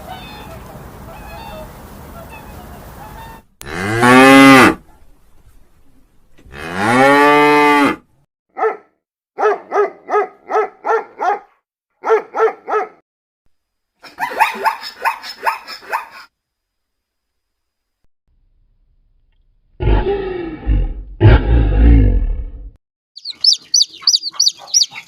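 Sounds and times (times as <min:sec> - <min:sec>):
cow mooing: 0:03.6 - 0:04.8, 0:06.5 - 0:08.0
dog barking: 0:08.5 - 0:13.0, 0:14.0 - 0:16.3, 0:24.0 - 0:25.0.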